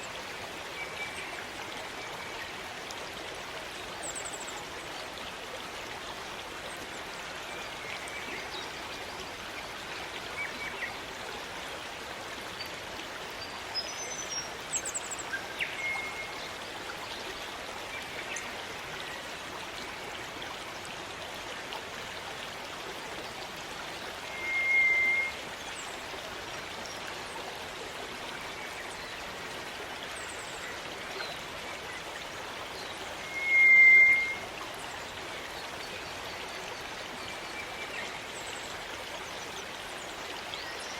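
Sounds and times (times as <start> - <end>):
stream rushing: 0.0 - 40.9
bird whistles: 24.3 - 25.3, 33.2 - 34.4.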